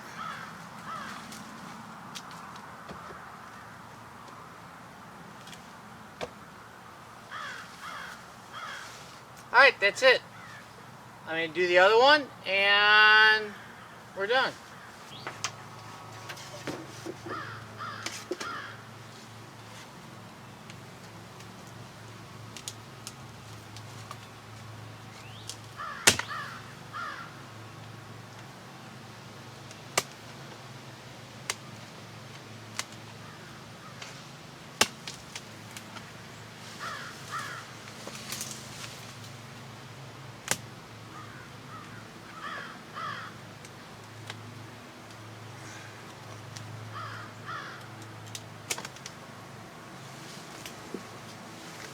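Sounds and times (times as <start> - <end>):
crows cawing: 0.0 - 1.8, 2.9 - 3.9, 7.2 - 9.2, 10.2 - 11.0, 13.4 - 15.4, 17.0 - 19.0, 25.7 - 27.5, 33.2 - 34.2, 36.6 - 37.8, 41.0 - 43.6, 46.8 - 48.1.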